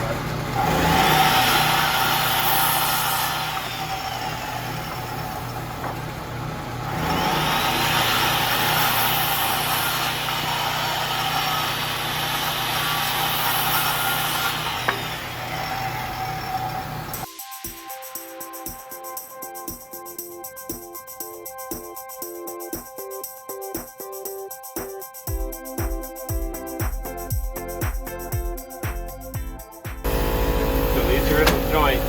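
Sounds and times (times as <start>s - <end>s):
power saw cutting wood: 0.0s - 17.3s, 30.0s - 32.0s
steady low hum: 30.1s - 32.0s.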